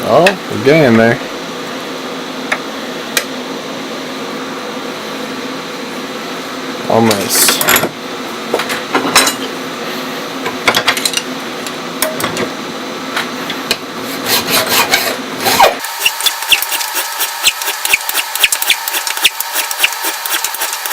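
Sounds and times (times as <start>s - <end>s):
abrasive tool rasping metal: 14.2s - 20.9s.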